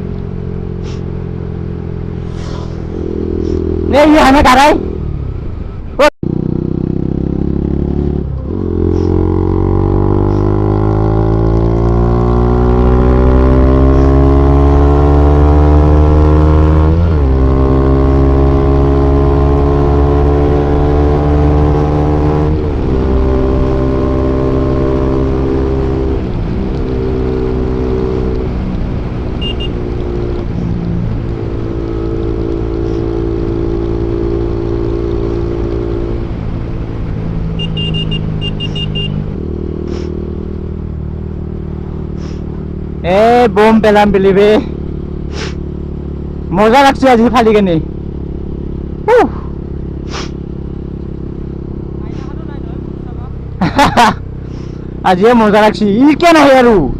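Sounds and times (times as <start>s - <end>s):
motorcycle engine accelerating: 0.0s - 56.9s.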